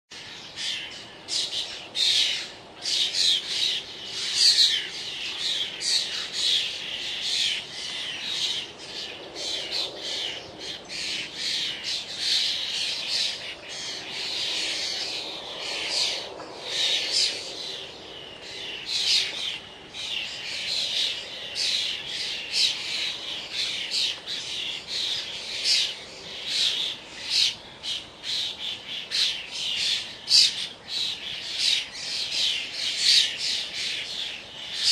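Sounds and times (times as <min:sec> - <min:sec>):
distant road traffic hum: 0:00.1 - 0:34.9
starlings squawking and chattering: 0:00.1 - 0:34.9.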